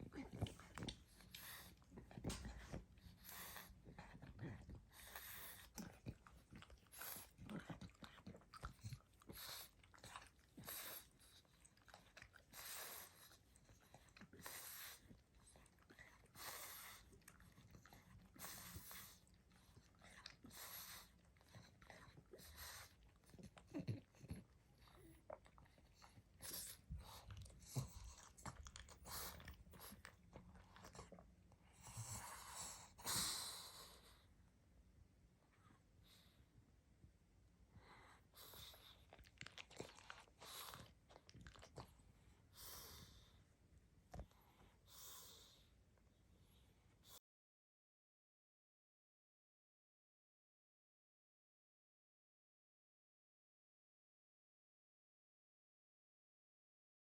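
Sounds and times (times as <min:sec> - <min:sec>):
dog snoring and snuffling: 0:00.0 - 0:34.2.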